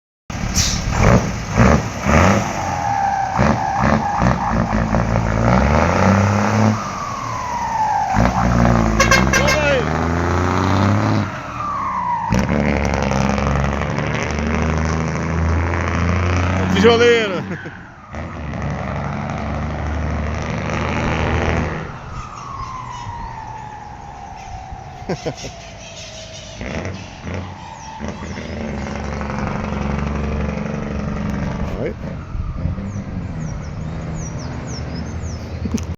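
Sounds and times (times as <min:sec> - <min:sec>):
truck diesel engine revving: 0:00.3 - 0:22.2, 0:22.8 - 0:35.8
turbo whistle winding down: 0:02.7 - 0:13.6
turbo whistle: 0:08.9 - 0:09.8.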